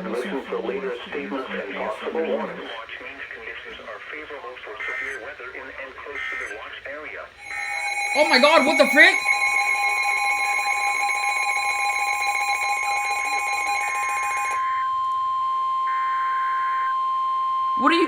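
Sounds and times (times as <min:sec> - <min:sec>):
buzzing data bursts: 0:07.4 - 0:14.6
harsh multi-tone alarm: 0:07.4 - 0:17.6
single-pitch alarm tone: 0:07.4 - 0:17.8.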